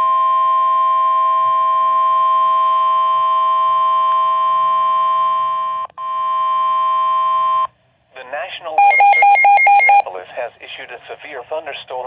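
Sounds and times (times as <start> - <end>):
steady warning alarm tone: 8.8 - 10.0.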